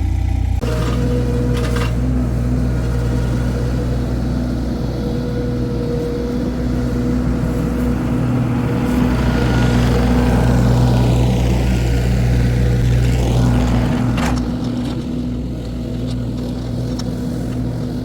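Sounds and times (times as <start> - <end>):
skid steer engine running: 0.0 - 18.0.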